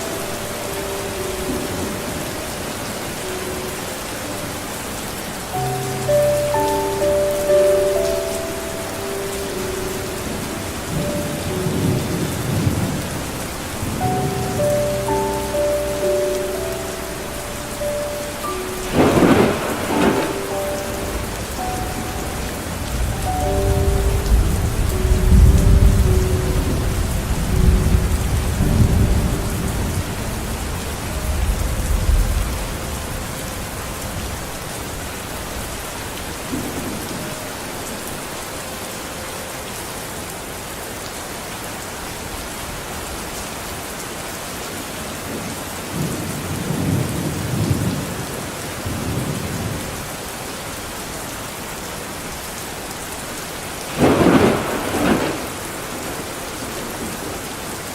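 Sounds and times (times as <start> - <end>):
rain falling: 0.0 - 57.9
thunder rumbling: 10.2 - 38.0, 53.9 - 57.4.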